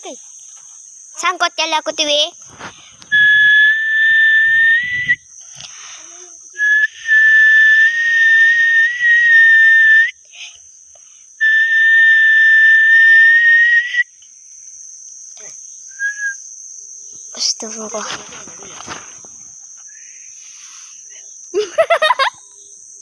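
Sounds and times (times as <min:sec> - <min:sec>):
person whistling long notes: 0:03.0 - 0:05.2, 0:06.6 - 0:10.2, 0:11.4 - 0:14.1, 0:15.9 - 0:16.4.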